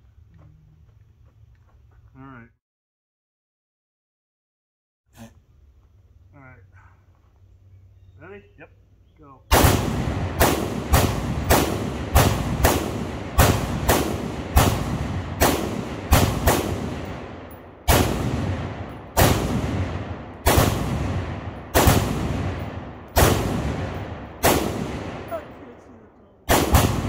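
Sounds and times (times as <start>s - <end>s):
rifle shots echoing: 9.5s - 25.9s, 26.5s - 27.0s.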